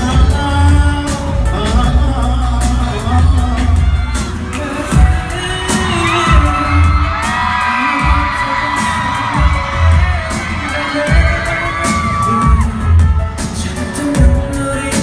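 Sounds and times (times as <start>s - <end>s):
loud concert music: 0.0s - 15.0s
crowd screaming: 3.1s - 14.2s.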